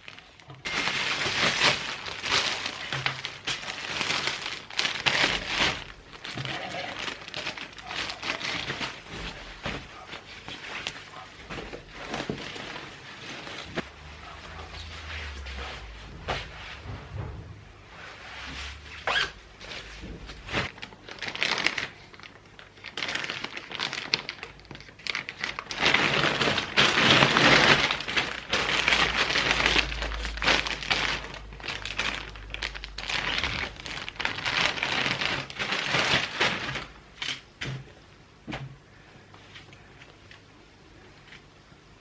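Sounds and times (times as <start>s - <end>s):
plastic packaging crinkling and tearing: 0.0s - 13.9s, 19.0s - 37.4s.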